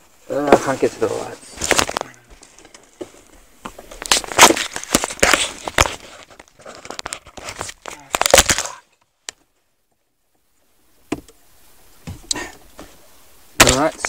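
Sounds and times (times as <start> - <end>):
rustling handling noise: 0.0 - 9.8.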